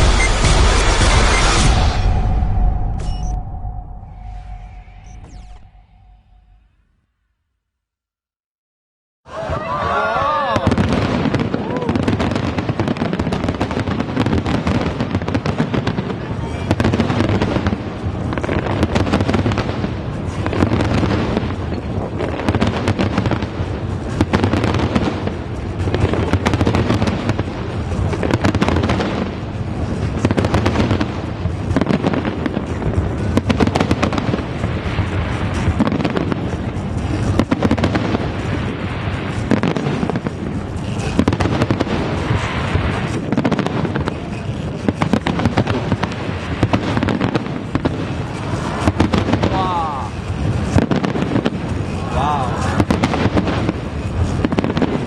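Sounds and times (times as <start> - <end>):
music: 0.0 - 4.6, 18.3 - 49.4
fireworks bursting and crackling: 0.0 - 6.7, 9.3 - 55.0.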